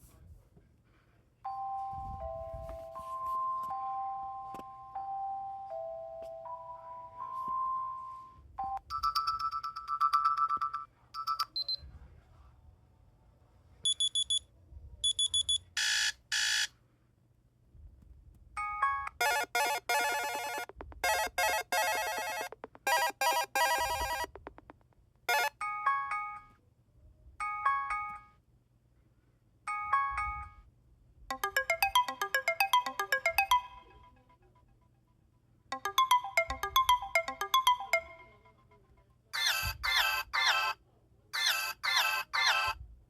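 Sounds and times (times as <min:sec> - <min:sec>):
jingles of fast notes: 0:31.3 - 0:34.0, 0:35.7 - 0:38.5.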